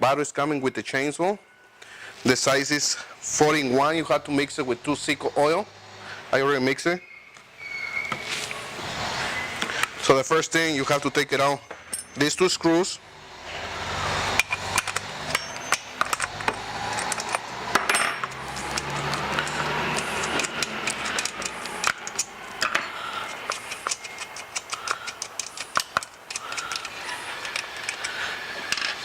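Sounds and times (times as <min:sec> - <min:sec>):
metallic clicks of tools and parts: 0:14.3 - 0:29.0.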